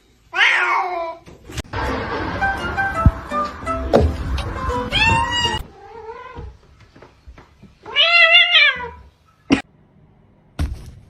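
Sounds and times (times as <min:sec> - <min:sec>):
cat meowing: 0:00.3 - 0:01.2, 0:04.5 - 0:06.6, 0:07.9 - 0:09.1
sharp knock: 0:03.9 - 0:05.2.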